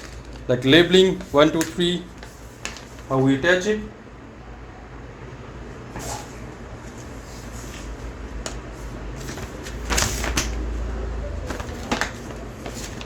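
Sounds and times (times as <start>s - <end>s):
packing material rustling: 0.0s - 3.2s, 7.0s - 10.7s, 11.4s - 13.0s
scraping rustle: 11.5s - 13.0s.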